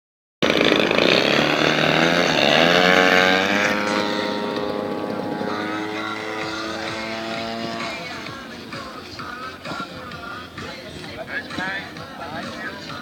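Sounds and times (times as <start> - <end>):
model plane engine running: 0.4 - 9.6.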